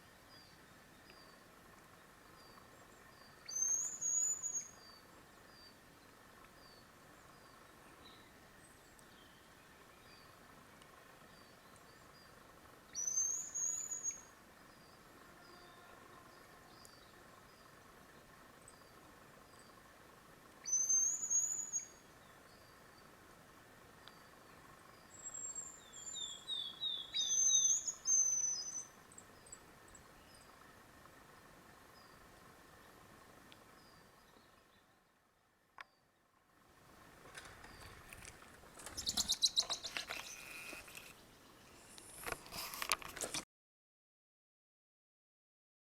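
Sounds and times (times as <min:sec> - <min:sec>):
bird's high thin whistling song: 0:03.4 - 0:05.0, 0:12.9 - 0:14.3, 0:20.6 - 0:22.0, 0:25.1 - 0:28.9, 0:39.0 - 0:41.2.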